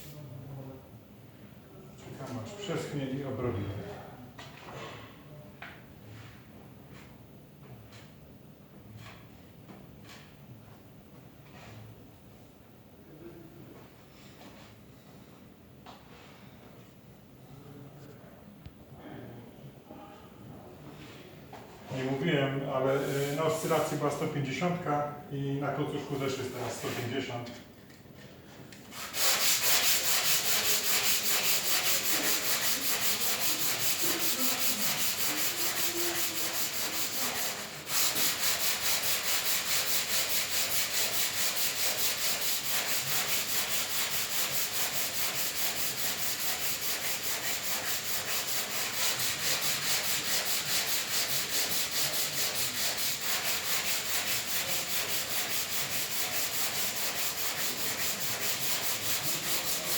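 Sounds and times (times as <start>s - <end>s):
sanding a metal panel: 28.9s - 59.9s.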